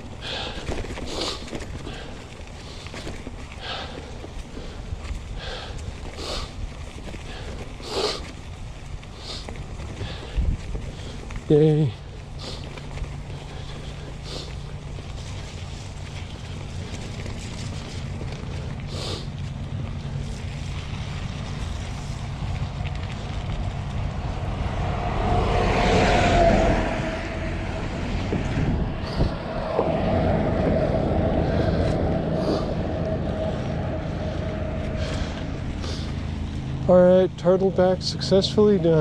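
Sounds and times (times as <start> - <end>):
bike tyres and frame rattling: 0.0 - 39.0
wind noise on microphone: 9.7 - 11.2, 21.5 - 35.7.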